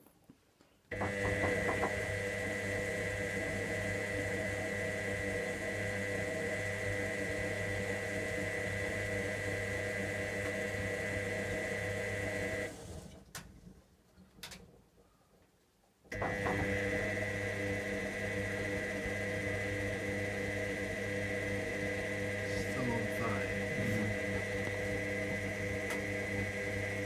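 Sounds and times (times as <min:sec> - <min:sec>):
washing machine running: 0:00.9 - 0:13.3, 0:16.1 - 0:27.0.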